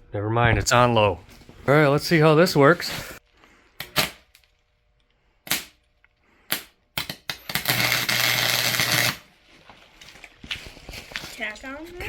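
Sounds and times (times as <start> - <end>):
welding arc snapping: 5.5 - 5.8, 6.5 - 9.3
welding arc crackling: 7.0 - 9.3.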